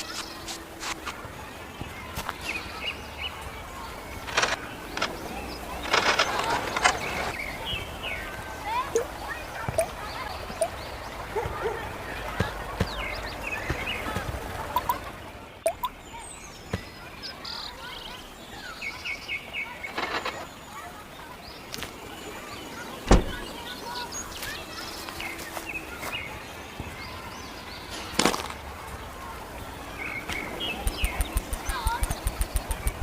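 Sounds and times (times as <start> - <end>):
birds chirping: 0.0 - 33.0
small clicks and knocks: 4.2 - 7.4, 19.8 - 20.5.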